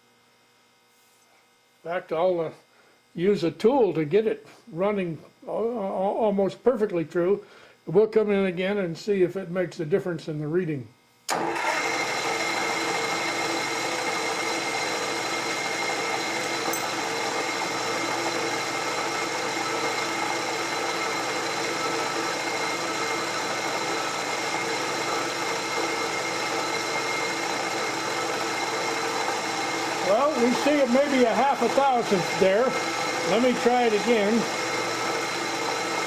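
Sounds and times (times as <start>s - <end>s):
milling machine motor hum: 11.3s - 36.0s.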